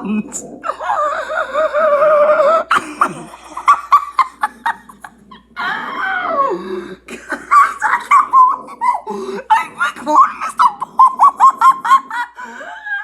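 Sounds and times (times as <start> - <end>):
child laughing hard: 10.1 - 13.0.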